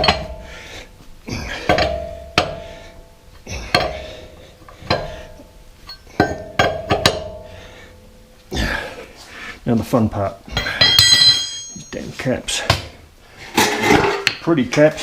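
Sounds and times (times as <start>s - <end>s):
wrench knocking on lug nuts: 3.7s - 4.1s, 5.9s - 7.4s.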